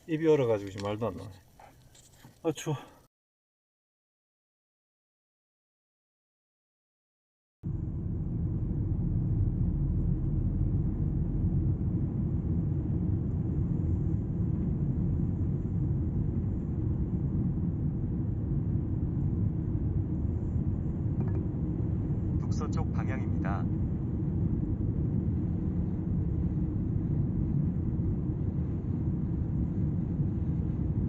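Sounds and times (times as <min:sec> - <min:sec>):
road and engine rumble: 0:07.6 - 0:31.0.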